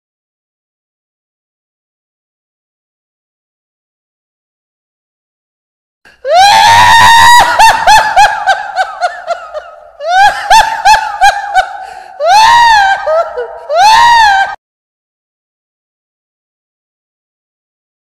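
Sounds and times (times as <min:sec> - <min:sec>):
cartoonish recorded laughter: 0:07.1 - 0:14.6.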